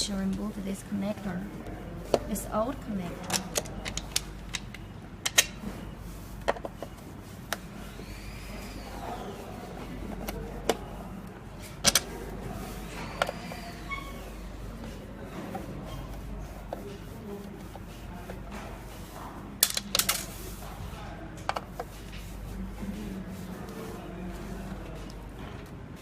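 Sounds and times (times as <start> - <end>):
low steady hum: 0.0 - 25.4
sharp clicks and knocks: 3.2 - 5.6
faint short squeaks: 13.0 - 14.4.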